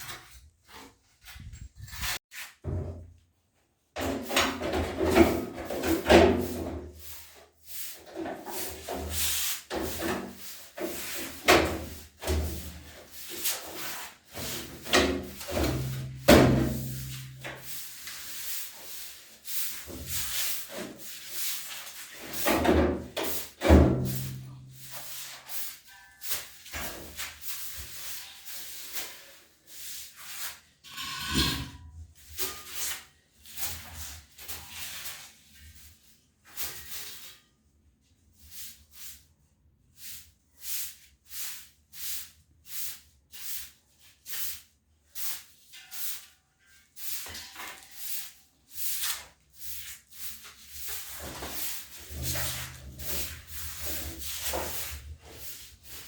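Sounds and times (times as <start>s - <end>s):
loud scrape: 30.8s - 32.0s.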